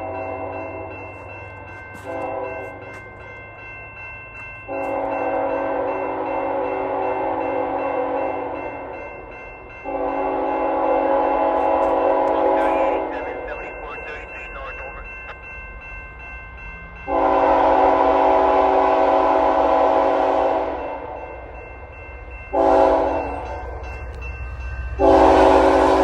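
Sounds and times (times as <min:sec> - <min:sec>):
crossing signal bells ringing: 0:00.0 - 0:26.0
low locomotive rumble: 0:00.0 - 0:26.0
locomotive air horn blasts: 0:09.9 - 0:13.1, 0:17.1 - 0:20.8, 0:22.6 - 0:23.4, 0:25.0 - 0:26.0.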